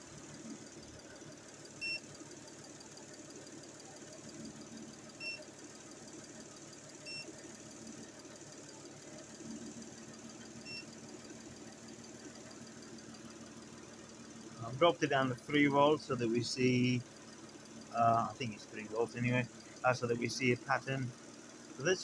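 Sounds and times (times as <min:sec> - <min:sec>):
car engine idling: 0:00.0 - 0:22.0
short electronic beeps: 0:01.8 - 0:02.0, 0:05.2 - 0:05.4, 0:07.0 - 0:07.3, 0:10.6 - 0:11.0.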